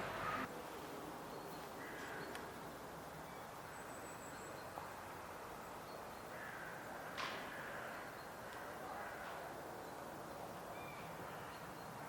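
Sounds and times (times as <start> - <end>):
steady outdoor hiss: 0.0 - 12.0
ravens calling: 1.7 - 2.6, 6.2 - 10.1.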